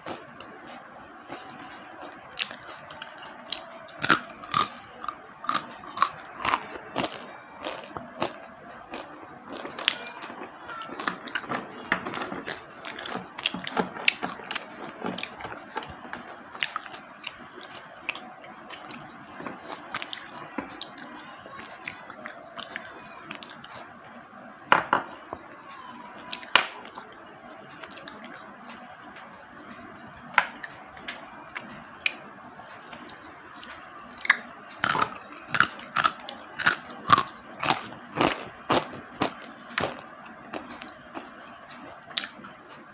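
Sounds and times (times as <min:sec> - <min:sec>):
slate pencils crunching and snapping: 0:02.4 - 0:14.6, 0:34.2 - 0:41.2.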